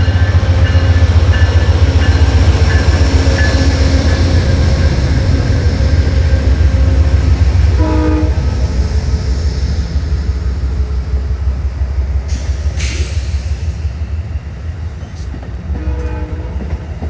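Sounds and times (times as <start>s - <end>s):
passenger train rumbling: 0.0s - 17.0s
train horn: 6.2s - 8.8s, 15.7s - 16.8s.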